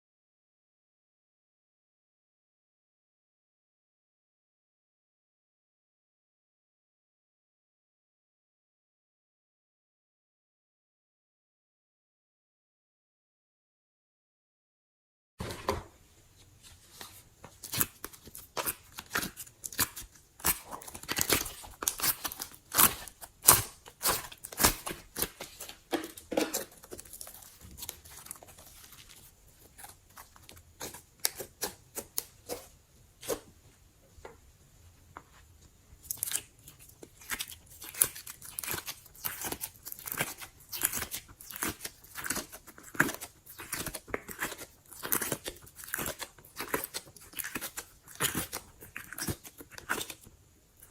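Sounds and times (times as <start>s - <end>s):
slime squished by hand: 16.9s - 33.4s, 36.0s - 50.3s.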